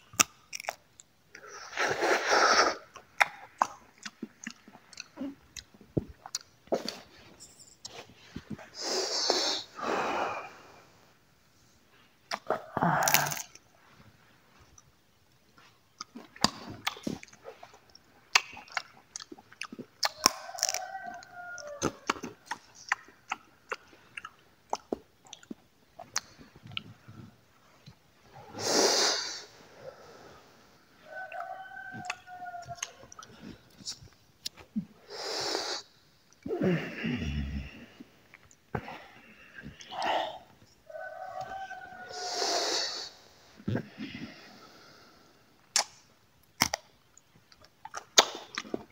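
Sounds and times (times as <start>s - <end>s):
chewing crunchy dry fruit: 0.0s - 2.0s, 2.9s - 7.2s, 12.3s - 13.7s, 14.6s - 28.0s, 45.7s - 48.9s
mouth clicks: 0.0s - 7.0s, 15.9s - 27.1s, 39.6s - 40.7s, 45.6s - 48.9s
long breaths of smoke: 8.7s - 11.2s, 28.4s - 30.9s, 35.0s - 36.0s, 42.0s - 45.5s.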